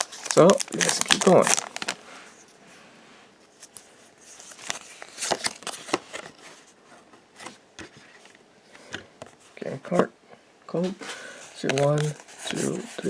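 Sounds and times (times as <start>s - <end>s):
card wrapper rustling: 0.0s - 2.4s, 3.5s - 6.7s, 11.4s - 13.0s.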